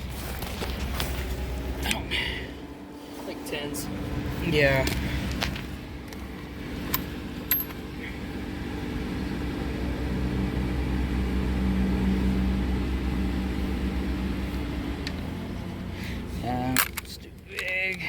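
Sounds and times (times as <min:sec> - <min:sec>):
low engine hum: 0:00.0 - 0:18.0
light metallic clinks: 0:06.1 - 0:08.2.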